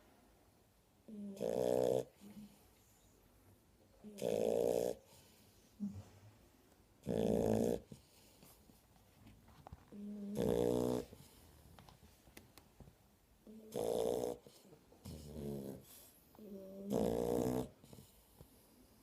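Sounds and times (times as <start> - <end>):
puppies snoring: 1.1 - 2.6, 4.0 - 6.1, 7.0 - 8.3, 10.0 - 11.5, 13.5 - 19.0
quiet breathing: 2.1 - 3.4, 5.0 - 6.6, 7.8 - 9.1, 14.4 - 16.8, 17.7 - 19.0.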